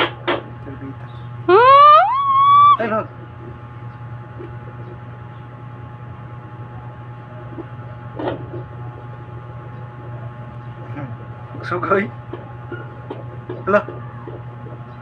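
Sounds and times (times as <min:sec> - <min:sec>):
doppler speaker hum and hiss: 0:00.0 - 0:03.7.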